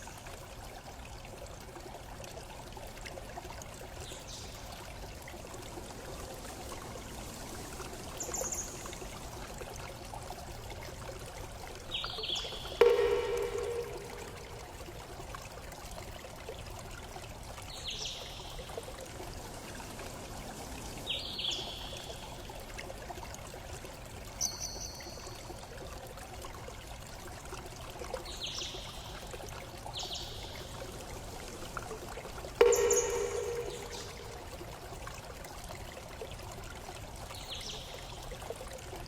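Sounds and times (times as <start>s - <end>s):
bird chirping: 32.6s - 34.4s.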